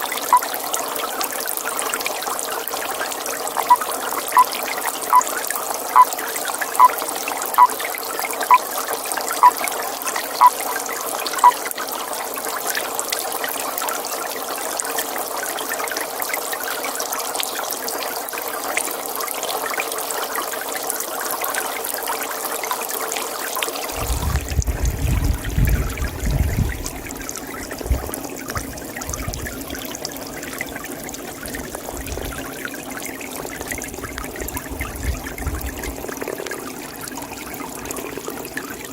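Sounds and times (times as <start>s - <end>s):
pond water trickling: 0.0s - 38.9s
toad calling: 0.2s - 0.5s, 3.6s - 5.3s, 5.9s - 6.1s, 6.8s - 7.8s, 9.4s - 9.6s, 11.4s - 11.6s.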